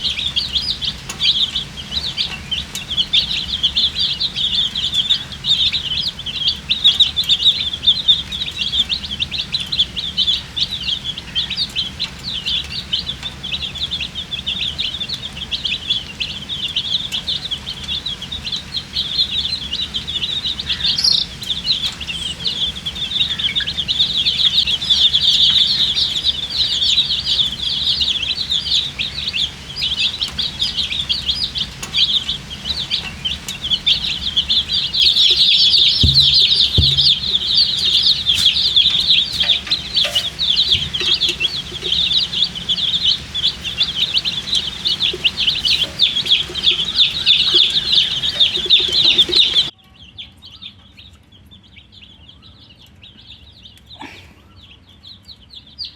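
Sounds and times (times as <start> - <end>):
baby chickens peeping: 0.0 - 55.9
low thumps: 34.0 - 47.2.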